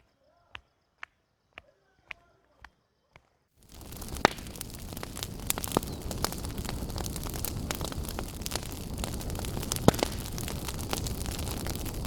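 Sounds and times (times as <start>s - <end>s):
wind buffeting microphone: 3.6s - 12.0s.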